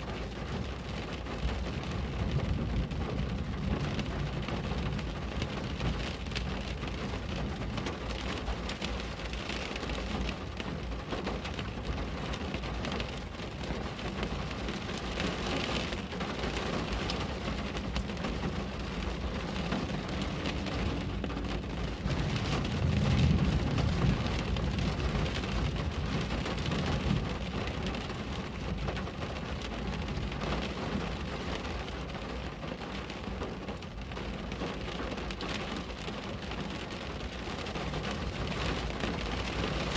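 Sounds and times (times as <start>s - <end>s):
rain on a window: 0.0s - 39.9s
low rumble: 17.0s - 27.7s.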